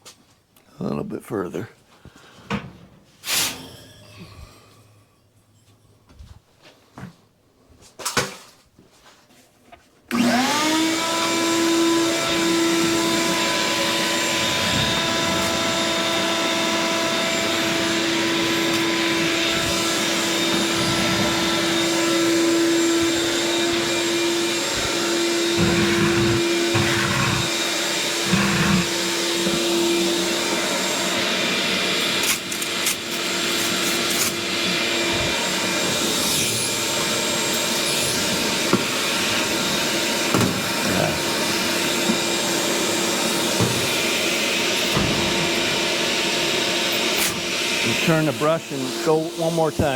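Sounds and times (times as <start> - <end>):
vacuum motor whining: 10.1 - 49.9.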